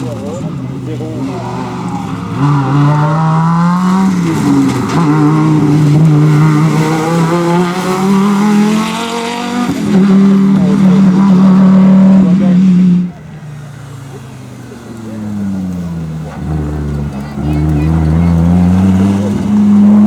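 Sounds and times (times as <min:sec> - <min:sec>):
car engine accelerating hard: 0:00.0 - 0:20.0.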